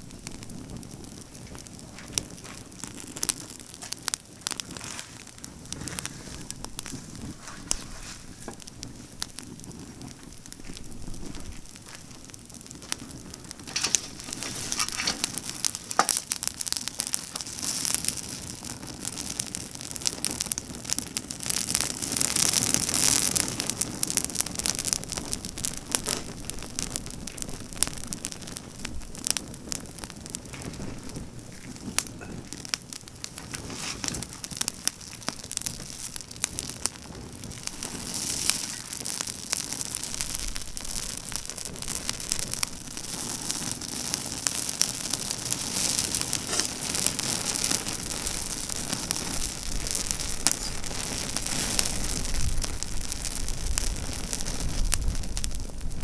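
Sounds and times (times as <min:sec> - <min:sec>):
campfire crackling: 0:00.0 - 0:56.0.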